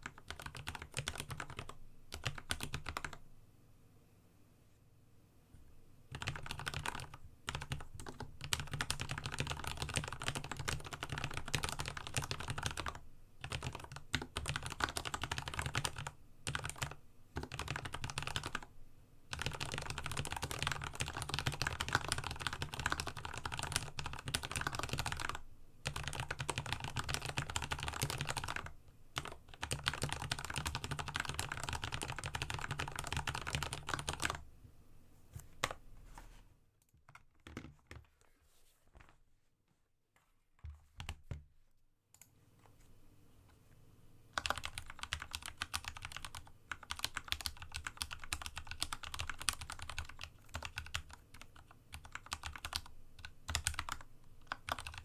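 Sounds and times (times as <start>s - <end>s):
fast typing on mechanical keyboard: 0.0s - 3.2s, 6.1s - 18.7s, 19.3s - 34.4s, 44.4s - 55.0s.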